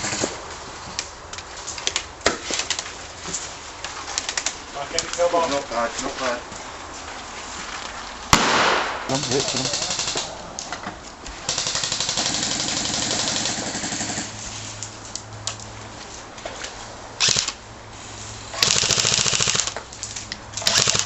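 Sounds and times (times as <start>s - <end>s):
airsoft rifle firing bursts: 8.3s - 10.3s, 11.5s - 14.3s, 17.2s - 17.5s, 18.6s - 19.8s, 20.6s - 21.0s.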